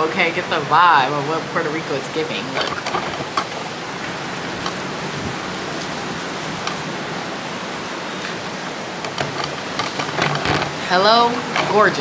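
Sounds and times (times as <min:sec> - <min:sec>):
wind rushing on microphone: 0:02.1 - 0:08.7.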